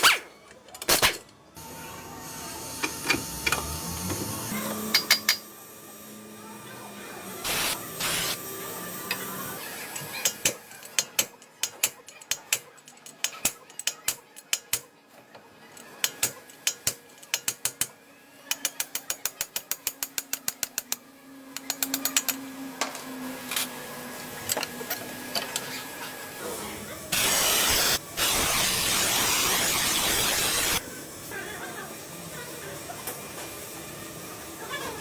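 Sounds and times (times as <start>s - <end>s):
ratchet wrench clicking: 4.9s - 5.5s, 10.0s - 14.9s, 15.8s - 17.9s, 18.5s - 21.0s, 21.6s - 22.4s.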